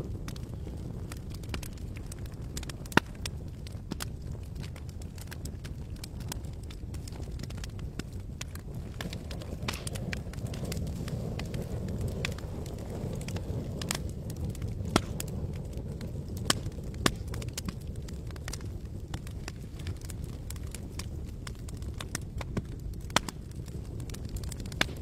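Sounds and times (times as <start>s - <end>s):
campfire crackling and popping: 0.0s - 25.0s
fire low rumble: 0.0s - 25.0s.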